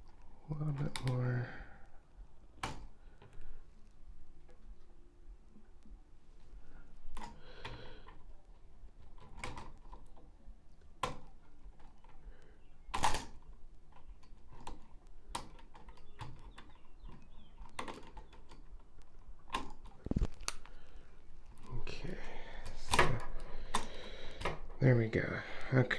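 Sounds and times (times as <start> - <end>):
hand tools clicking and tapping: 7.0 - 21.9, 22.6 - 25.9.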